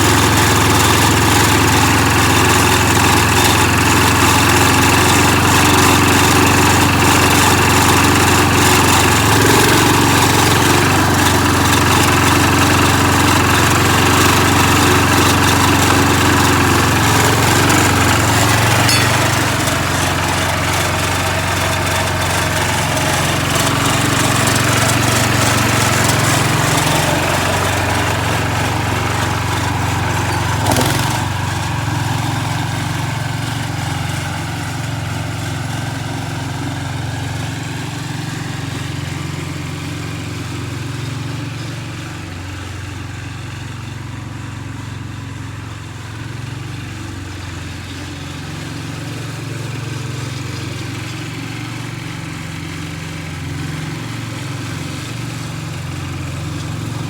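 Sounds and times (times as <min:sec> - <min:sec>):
engine running: 0:00.0 - 0:42.8
sharp knock: 0:18.9 - 0:19.5, 0:30.4 - 0:31.2.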